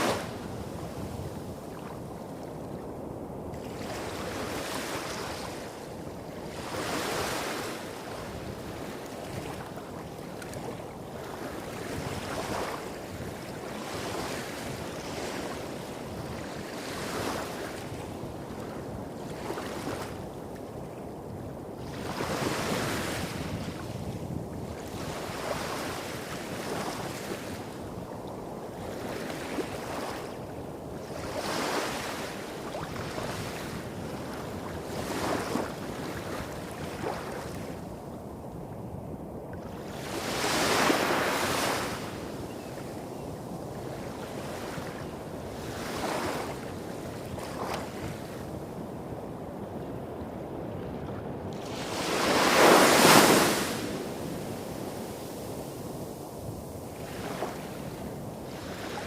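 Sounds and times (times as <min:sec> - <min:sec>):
small waves washing on beach: 0:00.0 - 0:59.0.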